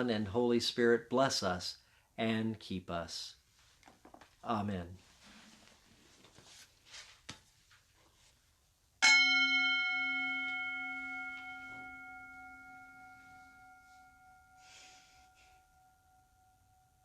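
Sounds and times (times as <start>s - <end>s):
bell ringing: 9.0s - 17.0s.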